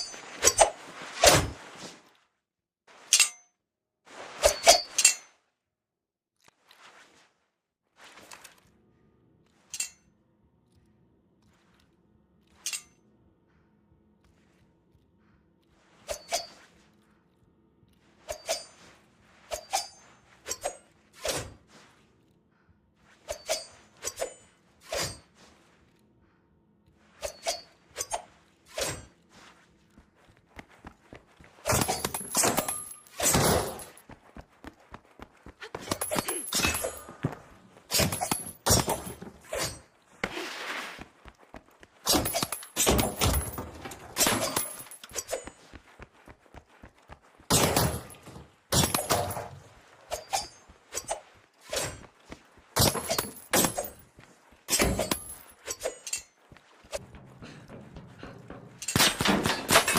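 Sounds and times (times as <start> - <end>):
sword blades clashing: 37.9 - 39.9, 42.1 - 43.6, 44.2 - 45.6, 54.7 - 56.4.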